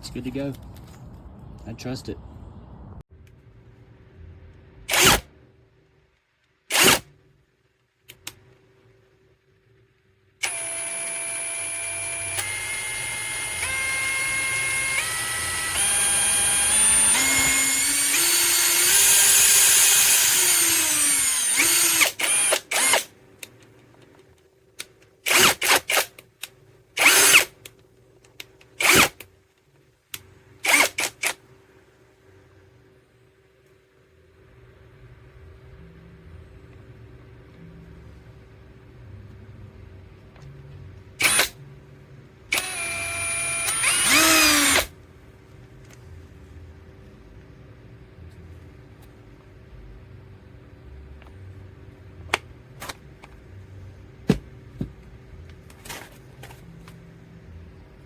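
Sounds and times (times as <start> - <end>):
impact wrench motor running: 4.9 - 5.2, 6.7 - 7.0, 10.4 - 23.1, 27.0 - 27.5, 30.6 - 31.3, 41.2 - 41.5, 42.5 - 44.9
impact wrench short bursts: 4.9 - 5.2, 6.7 - 7.0, 41.2 - 41.6.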